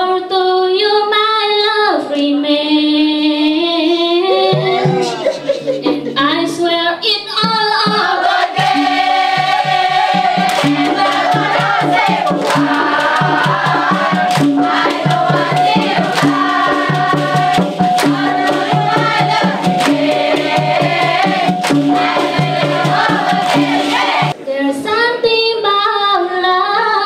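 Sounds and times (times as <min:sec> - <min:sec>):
group singing in chorus: 0:03.8 - 0:06.2, 0:07.6 - 0:24.4
steady percussion beat: 0:04.3 - 0:06.4, 0:07.4 - 0:24.4.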